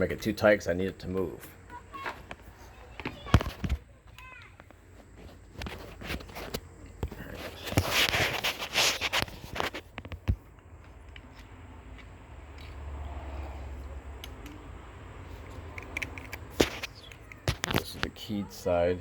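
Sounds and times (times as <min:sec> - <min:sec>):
lock hardware scraping and rattling: 0:05.2 - 0:12.8, 0:15.3 - 0:18.3
sharp metal clicks: 0:15.5 - 0:17.9.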